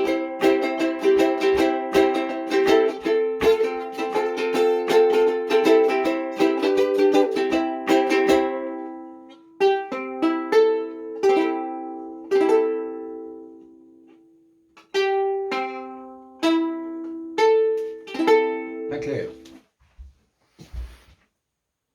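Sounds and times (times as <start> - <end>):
ukulele strumming chords: 0.0 - 19.6.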